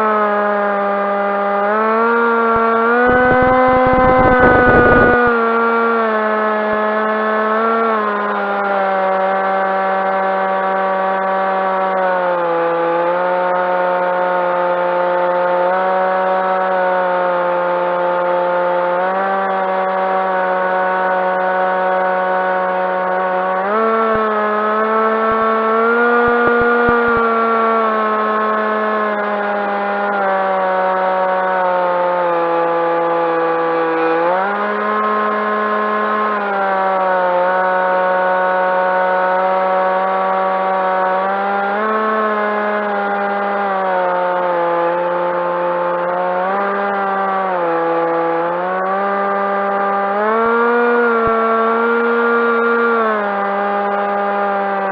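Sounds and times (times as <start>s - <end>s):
electric model plane motor buzzing: 2.4s - 6.1s, 23.8s - 28.0s.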